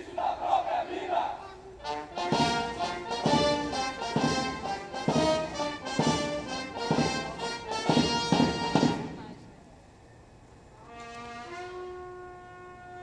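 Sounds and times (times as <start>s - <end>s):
brass band chords: 1.4s - 9.5s, 10.8s - 13.0s
heavy drum beat: 2.2s - 9.4s.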